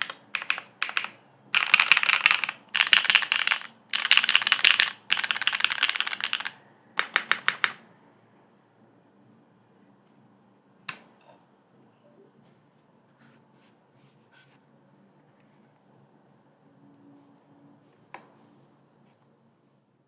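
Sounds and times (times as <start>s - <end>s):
fast typing on mechanical keyboard: 0.0s - 7.8s.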